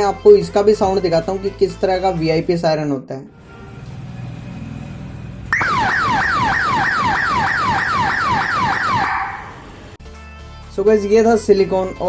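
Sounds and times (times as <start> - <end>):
electronic bike siren yelping: 5.5 - 10.0.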